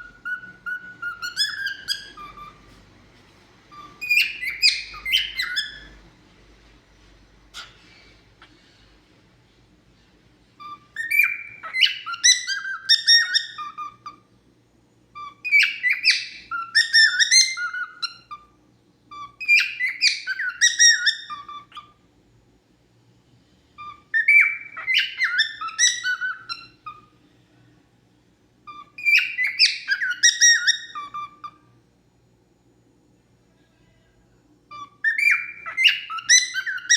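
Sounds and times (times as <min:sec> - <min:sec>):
cockatiel whistling: 0:00.0 - 0:02.8, 0:03.7 - 0:06.0, 0:10.6 - 0:14.3, 0:15.1 - 0:22.0, 0:23.8 - 0:27.1, 0:28.7 - 0:31.8, 0:34.7 - 0:36.9.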